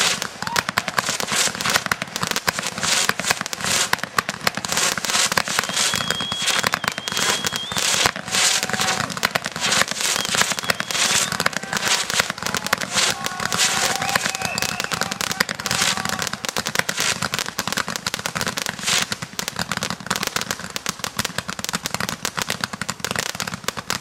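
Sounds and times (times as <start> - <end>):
fireworks crackling and popping: 0.0 - 24.0
high firework whistle: 4.8 - 16.4
lower firework whistle: 5.4 - 16.4.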